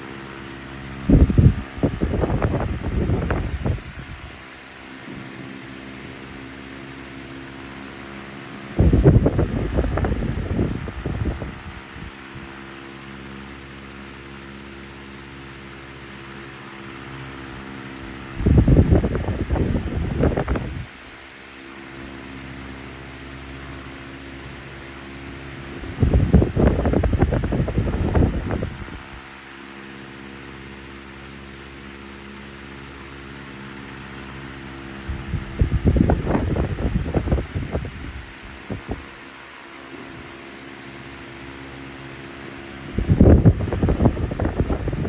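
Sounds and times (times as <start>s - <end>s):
electric fan running: 0.0s - 45.0s
air buffeting microphone: 1.0s - 6.4s, 8.6s - 12.6s, 18.2s - 21.0s, 25.2s - 29.3s, 34.8s - 40.4s, 42.5s - 45.0s.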